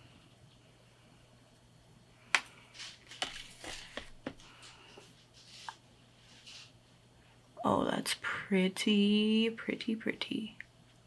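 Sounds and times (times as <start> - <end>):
soft brushing rustles: 2.8 - 6.8.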